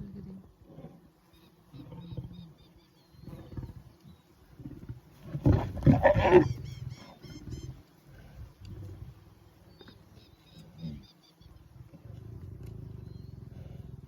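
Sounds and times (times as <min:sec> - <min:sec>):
lion growling and snarling: 0:04.6 - 0:06.6, 0:11.8 - 0:14.0.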